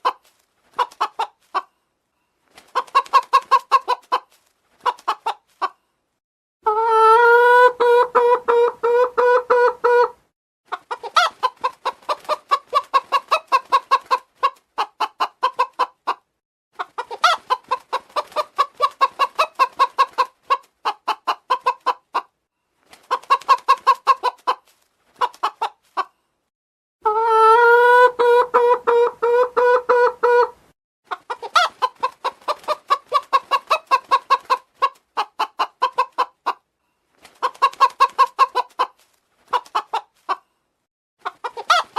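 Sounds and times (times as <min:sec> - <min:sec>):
chicken clucking: 0:00.0 - 0:01.9, 0:02.6 - 0:05.9, 0:06.6 - 0:22.4, 0:23.0 - 0:26.3, 0:27.0 - 0:36.7, 0:37.3 - 0:40.6, 0:41.2 - 0:41.9
chicken drawn-out call: 0:06.6 - 0:16.2, 0:27.0 - 0:36.6, 0:41.2 - 0:41.9.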